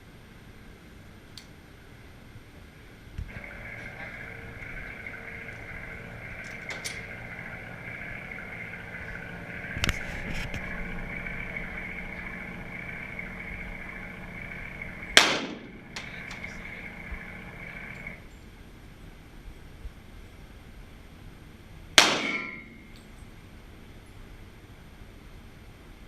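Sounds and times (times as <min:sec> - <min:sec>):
steady hum: 0:02.7 - 0:18.9, 0:20.9 - 0:23.8
sharp cracks: 0:03.3 - 0:18.2, 0:22.0 - 0:22.7
pistol shot: 0:15.2 - 0:15.8, 0:22.0 - 0:22.7.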